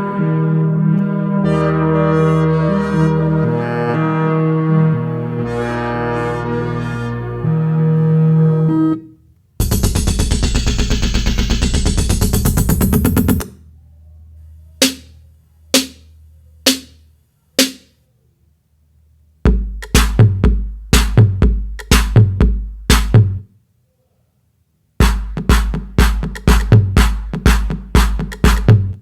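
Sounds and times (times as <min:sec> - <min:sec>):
crisp drum hits: 0:09.6 - 0:13.3
kick drum and bass pattern: 0:09.6 - 0:13.5, 0:19.4 - 0:23.4, 0:25.0 - 0:29.0
electronic drum-machine beat: 0:09.6 - 0:13.6, 0:14.8 - 0:15.1, 0:15.8 - 0:16.1, 0:16.7 - 0:17.0, 0:17.6 - 0:17.9, 0:19.4 - 0:23.4, 0:25.0 - 0:29.0.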